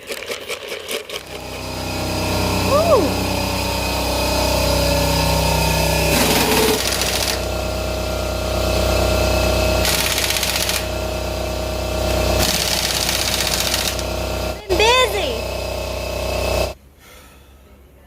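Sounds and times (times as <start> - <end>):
engine running with rattling pulse: 0.1 - 16.8.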